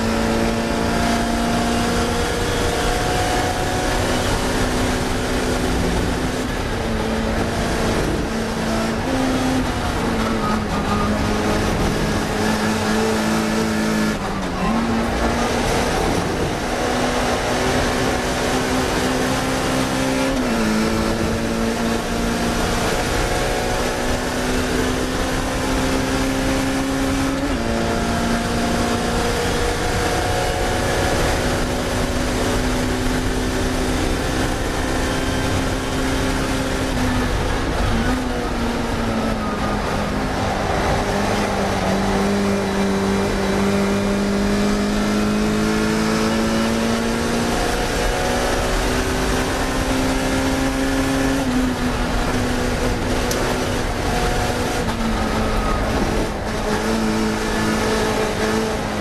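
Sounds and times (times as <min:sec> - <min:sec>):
race car engine revving: 0:00.0 - 0:59.0.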